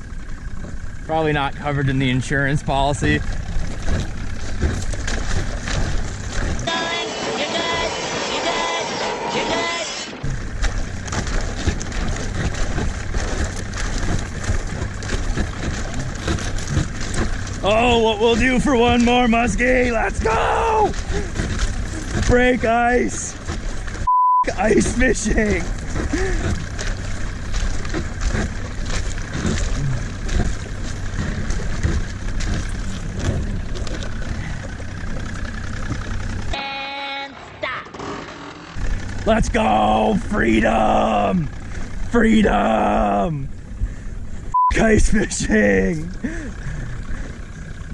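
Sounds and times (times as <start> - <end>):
boat motor humming: 0.0 - 47.9
ice cracking against hull: 3.3 - 8.5, 10.2 - 36.5.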